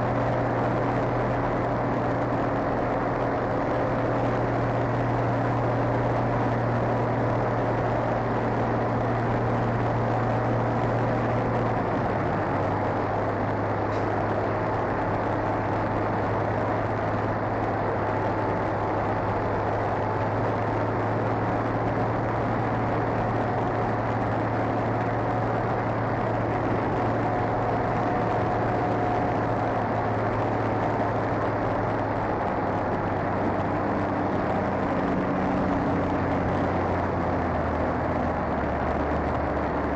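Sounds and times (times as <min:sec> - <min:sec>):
constant rushing noise: 0:00.0 - 0:39.9
vehicle engine idling: 0:00.0 - 0:39.9.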